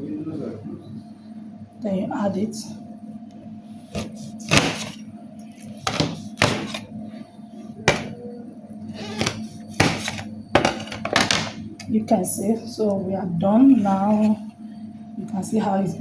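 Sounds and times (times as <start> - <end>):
utensil scraping: 3.9 - 5.0, 5.7 - 6.9, 8.9 - 11.0
kitchen utensils knocking: 5.9 - 6.8, 7.9 - 8.2, 9.0 - 11.6.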